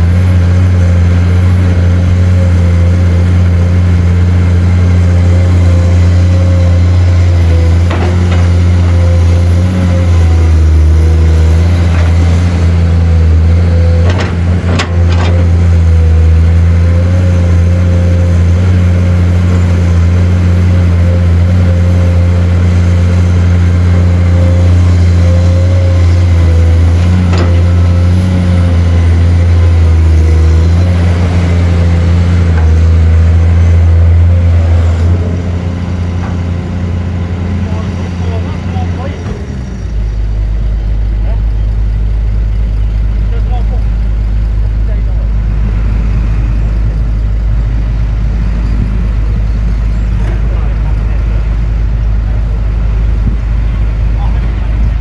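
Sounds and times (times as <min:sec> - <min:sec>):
excavator diesel engine: 0:00.0 - 0:55.0.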